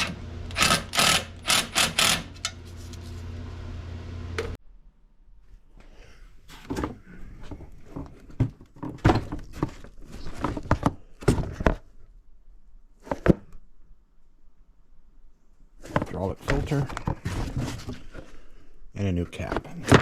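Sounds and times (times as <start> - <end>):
knocks and clunks of hard objects: 6.6 - 12.0, 13.0 - 13.6, 15.8 - 18.4, 19.4 - 20.0.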